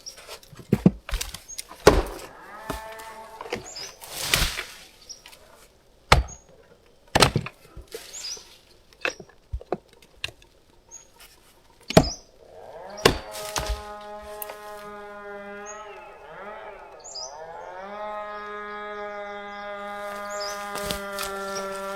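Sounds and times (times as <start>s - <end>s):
wooden knocks and thunks: 0.5s - 3.7s, 7.1s - 8.0s
cow mooing: 1.9s - 4.0s, 12.4s - 21.9s
faint bird chirps: 7.7s - 21.7s.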